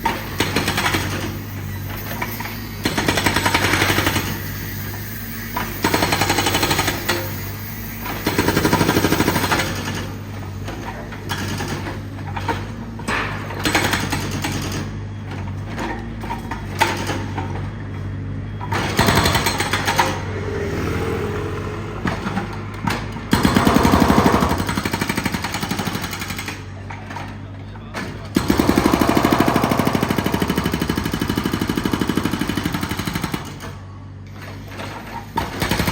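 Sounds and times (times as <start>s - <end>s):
jackhammer hammering: 5.8s - 7.4s, 8.0s - 10.2s, 18.7s - 26.7s, 28.3s - 33.7s.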